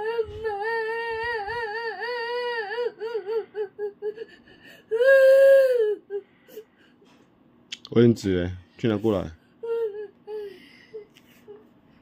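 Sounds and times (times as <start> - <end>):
young girl crying: 0.0 - 7.0, 9.6 - 11.7.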